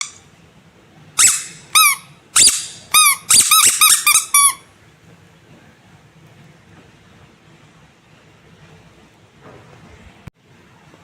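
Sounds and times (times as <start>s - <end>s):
rubber squeaky toy squeaking: 1.2s - 4.7s.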